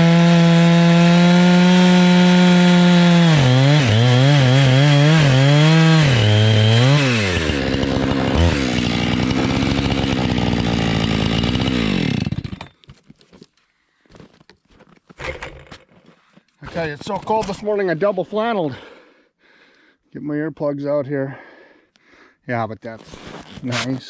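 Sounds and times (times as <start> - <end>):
chainsaw cutting through log: 0.0 - 13.0.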